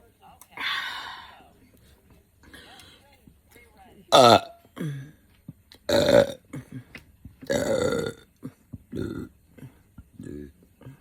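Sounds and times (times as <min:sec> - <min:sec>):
person burping loudly: 0:04.1 - 0:05.0, 0:05.9 - 0:06.7, 0:07.4 - 0:09.4, 0:10.1 - 0:10.6.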